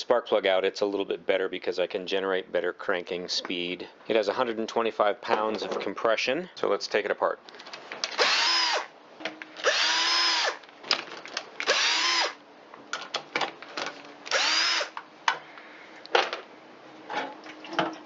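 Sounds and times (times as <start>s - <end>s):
power drill spinning: 8.1s - 8.9s, 9.6s - 10.6s, 11.6s - 12.4s, 14.3s - 15.0s.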